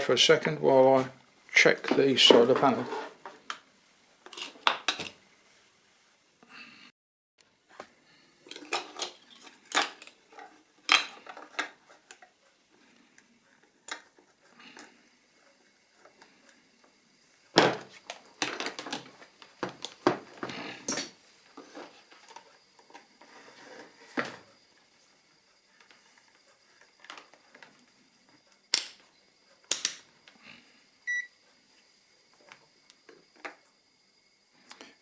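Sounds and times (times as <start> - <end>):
short electronic beep: 31.1 - 31.3.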